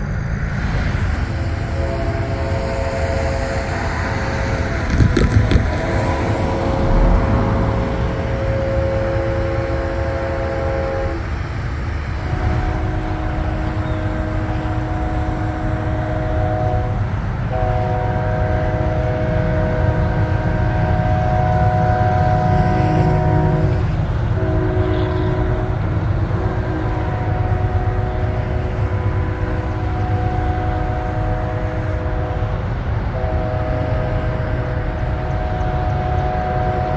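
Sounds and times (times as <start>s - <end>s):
steady low rumble: 0.0s - 17.6s
distant locomotive air horn: 0.6s - 36.9s.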